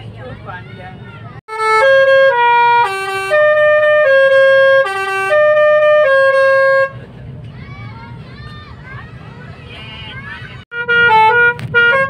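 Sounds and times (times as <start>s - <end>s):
multi-tone musical bus horn: 1.5s - 7.1s, 9.6s - 12.0s.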